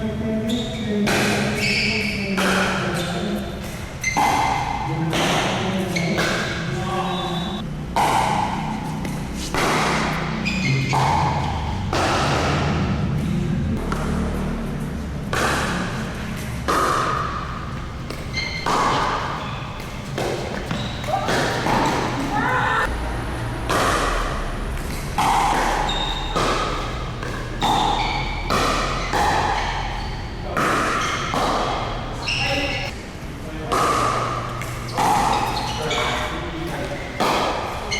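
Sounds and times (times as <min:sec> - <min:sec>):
paddle striking plastic ball: 0:15.3 - 0:22.4.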